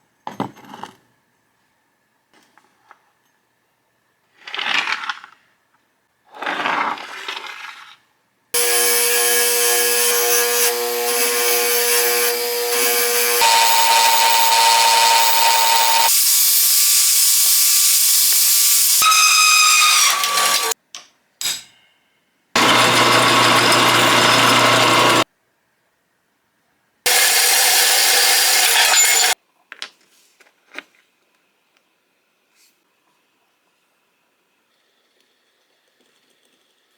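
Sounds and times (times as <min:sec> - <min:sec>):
grinding metal: 0:08.6 - 0:20.8, 0:22.6 - 0:25.2, 0:27.1 - 0:29.4
power tool motor whine: 0:08.6 - 0:20.8, 0:22.6 - 0:25.2, 0:27.1 - 0:29.4
power tool winding down: 0:08.6 - 0:20.8, 0:22.6 - 0:25.2, 0:27.1 - 0:29.4.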